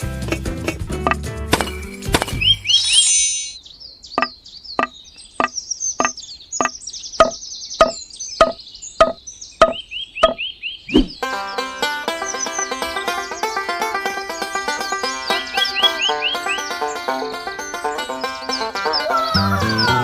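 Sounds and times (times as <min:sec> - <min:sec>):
high chirping: 0:00.3 - 0:20.0
sharp ringing knocks: 0:04.2 - 0:10.4.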